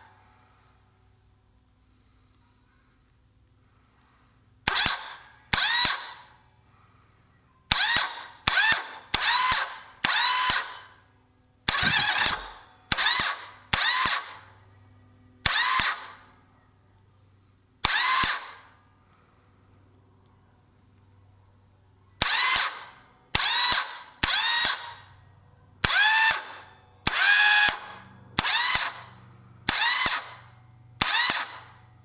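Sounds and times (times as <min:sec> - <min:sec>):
starter motor whirring: 0:04.7 - 0:06.6, 0:07.7 - 0:10.8, 0:11.7 - 0:16.0
starter click: 0:11.7 - 0:14.3.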